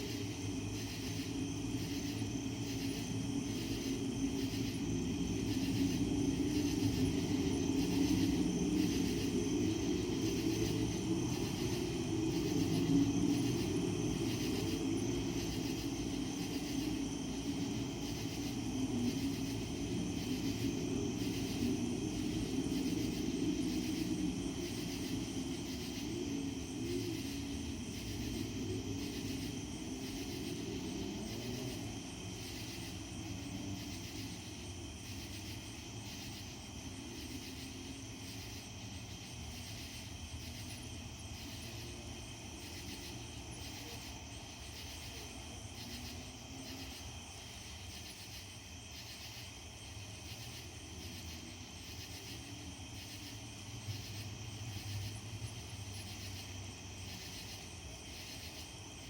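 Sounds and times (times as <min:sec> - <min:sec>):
low rumble from the sky: 0:00.0 - 0:47.0.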